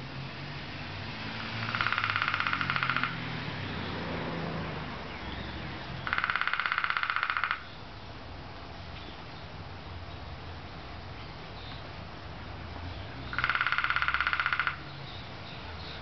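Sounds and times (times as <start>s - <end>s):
woodpecker drumming: 1.4s - 3.2s, 6.0s - 7.8s, 13.3s - 15.0s.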